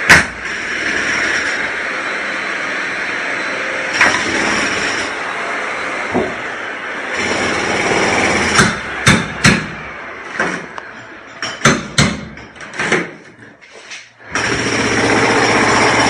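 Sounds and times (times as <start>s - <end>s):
steady machine noise: 0.0s - 11.5s, 14.2s - 16.0s
hammer blows: 6.0s - 12.7s.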